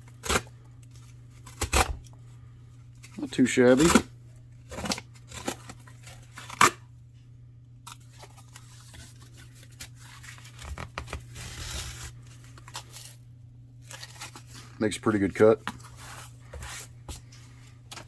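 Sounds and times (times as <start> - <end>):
knife cutting cardboard: 8.9 - 13.1.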